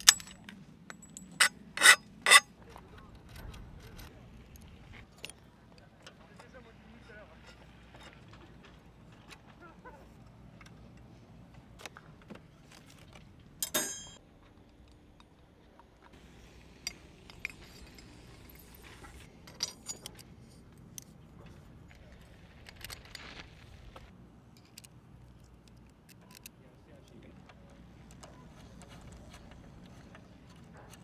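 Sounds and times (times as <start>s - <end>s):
metal tools clinking: 0.0s - 8.1s, 13.6s - 14.2s, 16.3s - 21.2s
loud ringing metal clatter: 13.6s - 14.2s.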